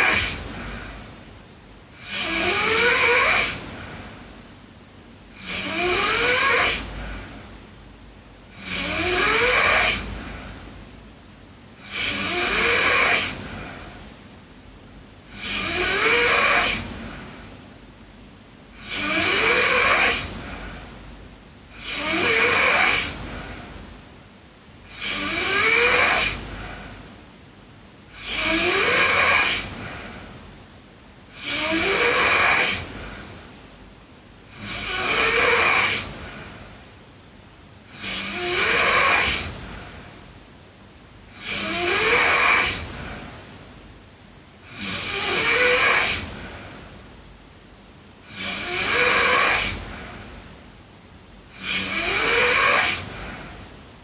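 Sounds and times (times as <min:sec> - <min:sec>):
girl snoring: 0:00.0 - 0:01.1, 0:02.0 - 0:04.3, 0:05.3 - 0:07.5, 0:08.5 - 0:10.8, 0:11.8 - 0:14.0, 0:15.3 - 0:17.5, 0:18.7 - 0:21.0, 0:21.7 - 0:23.8, 0:24.8 - 0:27.2, 0:28.1 - 0:30.4, 0:31.2 - 0:33.4, 0:34.5 - 0:36.8, 0:37.9 - 0:40.2, 0:41.3 - 0:43.4, 0:44.6 - 0:47.0, 0:48.2 - 0:50.5, 0:51.5 - 0:53.6.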